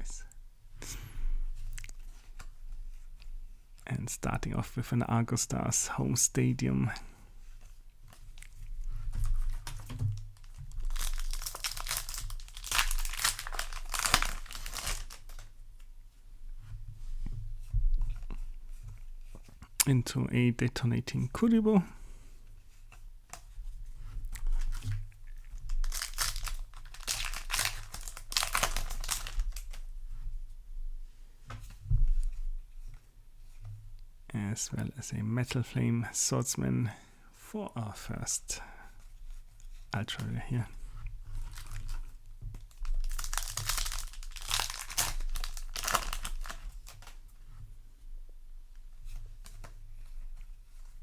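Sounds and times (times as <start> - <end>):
cards and foil wrapper crinkling: 9.4 - 15.5, 24.5 - 24.9, 25.6 - 29.9, 41.3 - 47.3.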